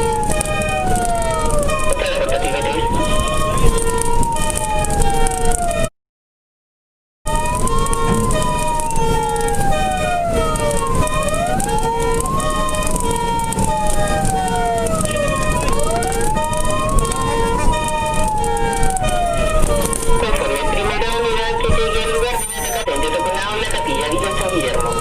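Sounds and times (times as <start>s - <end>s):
fire engine siren wailing: 0.0s - 5.9s, 7.3s - 25.0s
truck engine and road noise: 0.0s - 5.9s, 7.3s - 25.0s
short repeated beeps: 22.4s - 22.9s.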